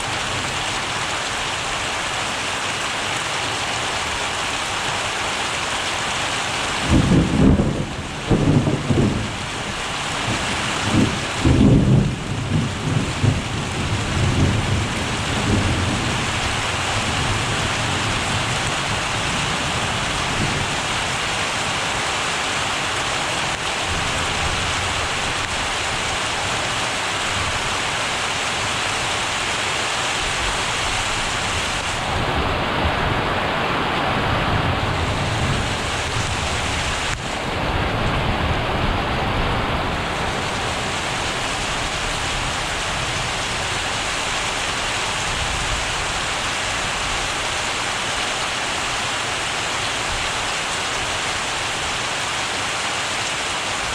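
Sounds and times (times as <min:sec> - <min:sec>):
heavy rain: 0:00.0 - 0:53.9
thunder cracking and rumbling: 0:06.8 - 0:21.2.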